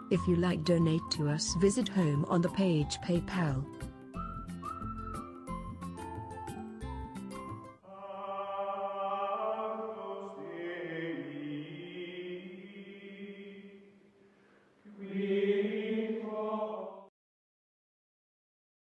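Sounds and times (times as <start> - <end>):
choral chant music: 7.8 - 14.1, 14.8 - 17.1.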